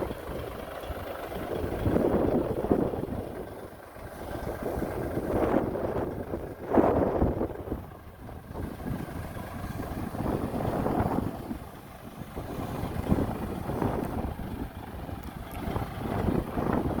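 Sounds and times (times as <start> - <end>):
diesel machinery rumbling: 0.0 - 17.0
wind noise on microphone: 0.0 - 17.0.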